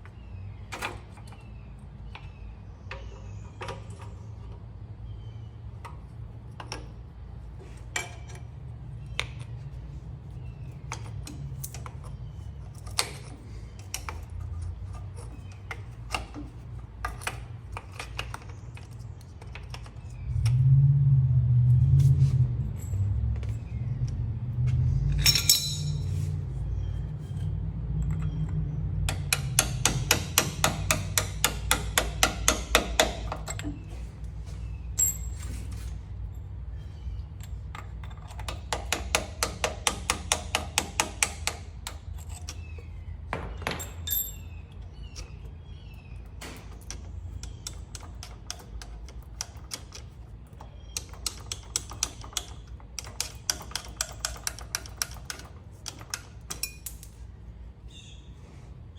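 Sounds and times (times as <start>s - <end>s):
metal tool clinking: 25.1s - 26.3s, 35.0s - 36.5s, 43.6s - 44.6s, 51.0s - 57.2s
ratchet wrench clicking: 29.1s - 33.7s, 47.3s - 57.1s.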